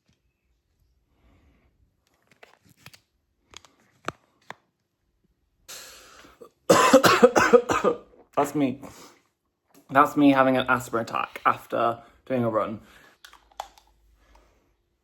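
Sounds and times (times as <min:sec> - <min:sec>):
person coughing hard: 0:06.7 - 0:08.1.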